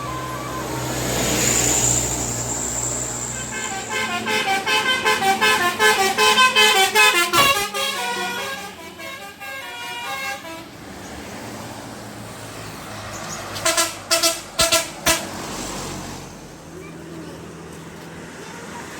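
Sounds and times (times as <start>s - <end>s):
musical bus horn: 0.0s - 10.8s, 13.6s - 15.4s
low steady vehicle noise: 0.0s - 18.9s.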